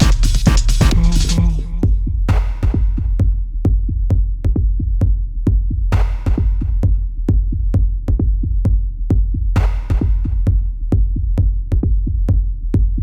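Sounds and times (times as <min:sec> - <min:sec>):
electronic music with drum beat: 0:00.0 - 0:03.4, 0:05.7 - 0:07.5.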